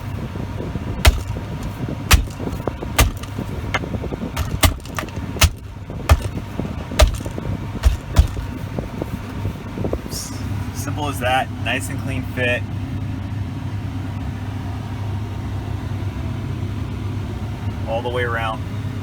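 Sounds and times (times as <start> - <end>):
steady low hum: 0.0 - 10.8.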